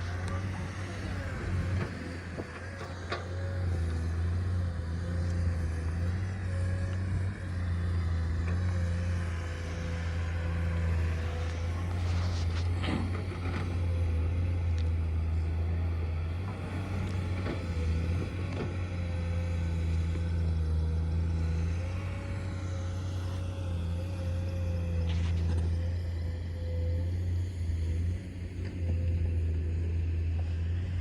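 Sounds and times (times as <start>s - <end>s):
diesel engine droning: 0.0s - 31.0s
steady whining tone: 0.0s - 31.0s.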